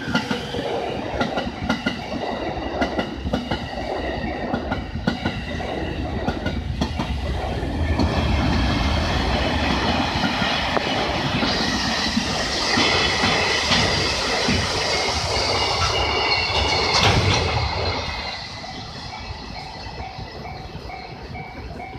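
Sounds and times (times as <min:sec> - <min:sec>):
freight train rolling past: 0:00.0 - 0:21.9
high-pitched squealing: 0:11.0 - 0:20.2.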